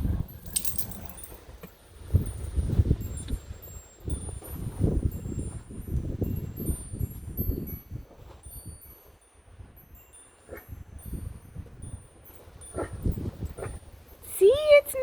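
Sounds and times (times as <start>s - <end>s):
wind buffeting microphone: 0.0s - 15.0s
wind chimes tinkling: 0.0s - 15.0s.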